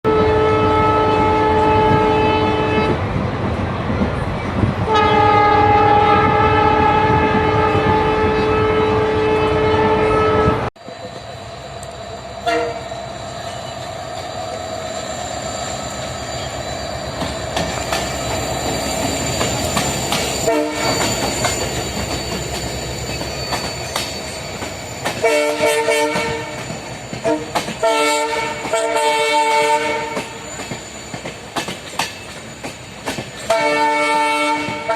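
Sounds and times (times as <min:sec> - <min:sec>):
locomotive air horn blasts: 0:00.1 - 0:03.0, 0:04.9 - 0:10.7, 0:12.4 - 0:12.9, 0:20.4 - 0:21.2, 0:25.2 - 0:26.6, 0:27.2 - 0:30.4, 0:33.5 - 0:34.9
locomotive engine humming: 0:00.7 - 0:34.9
wheels clacking over rails: 0:16.4 - 0:28.9, 0:30.1 - 0:33.6.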